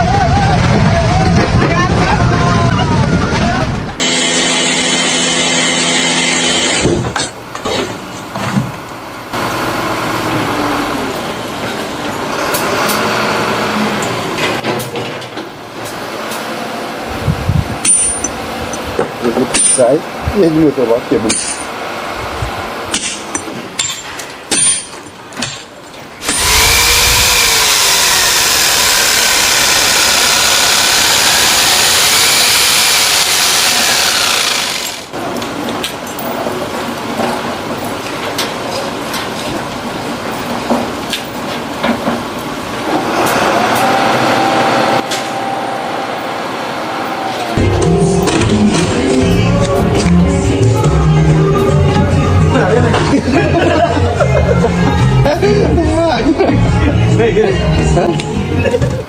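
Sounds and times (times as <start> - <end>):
power tool whining: 4.0 - 7.2, 26.2 - 35.2
steady machinery rumble: 15.5 - 35.4, 36.7 - 59.0
steady held machinery tones: 43.6 - 49.6.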